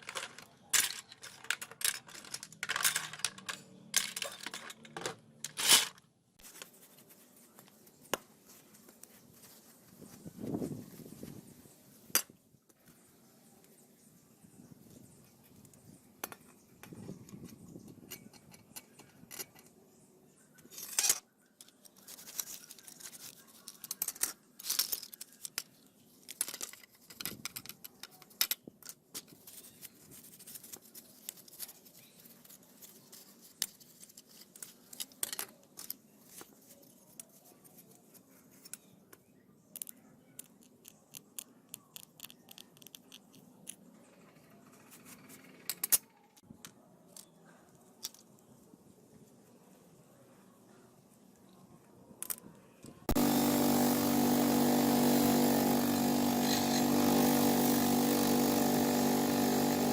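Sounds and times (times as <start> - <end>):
small parts clicking and tapping: 0.0 - 6.0, 15.6 - 19.8, 20.6 - 36.1, 38.6 - 48.5, 52.2 - 59.9.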